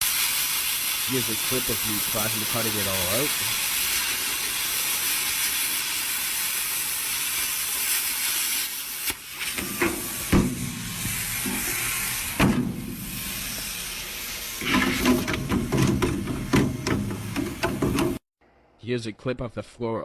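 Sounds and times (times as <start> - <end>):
plasma cutter hissing: 0.0 - 18.2
sharp knocks: 9.8 - 10.8, 12.4 - 13.0, 14.7 - 18.2.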